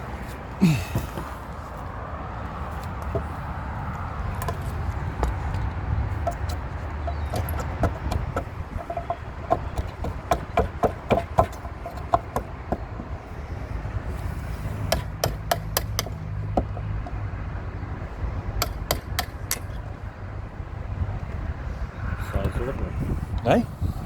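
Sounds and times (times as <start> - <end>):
hammer knocking on timber: 3.1 - 3.4, 6.2 - 13.1, 14.9 - 17.2, 18.6 - 19.6.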